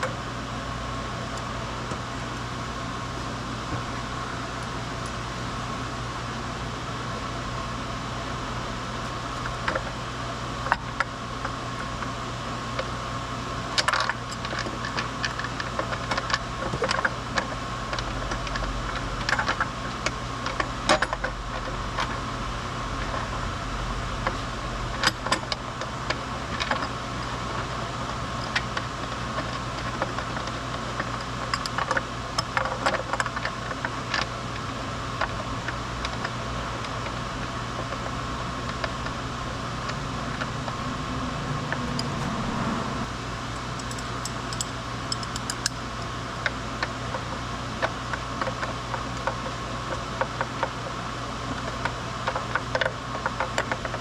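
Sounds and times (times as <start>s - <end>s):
steady mechanical hum: 0.0s - 54.0s
hand tools clicking and tapping: 43.7s - 45.8s.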